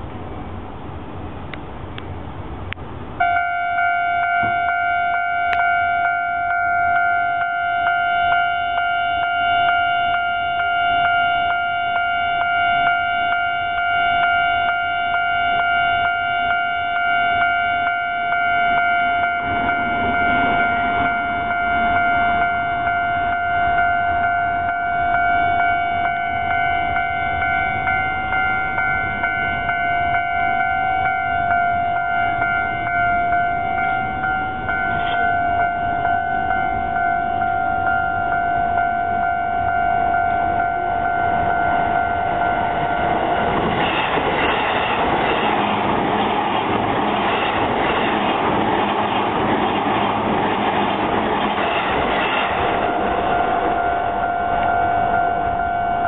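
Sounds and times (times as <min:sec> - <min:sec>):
level crossing warning bell: 0:03.2 - 0:43.8, 0:52.6 - 0:56.0
train rushing past: 0:13.7 - 0:56.0.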